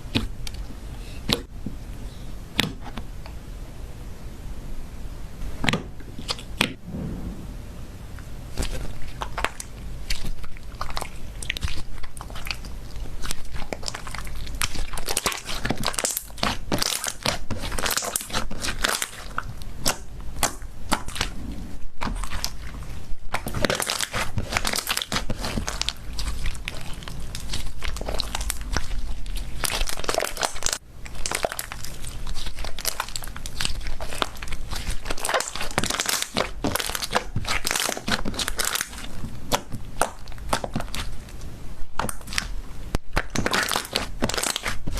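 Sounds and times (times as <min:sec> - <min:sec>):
slime crackling and popping: 0:08.5 - 0:21.4, 0:22.0 - 0:44.9.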